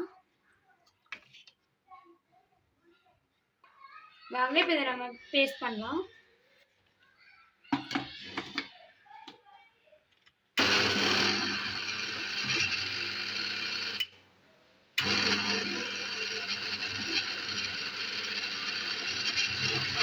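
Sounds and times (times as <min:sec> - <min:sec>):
mixer grinder motor running: 0:10.6 - 0:14.1, 0:15.0 - 0:20.0.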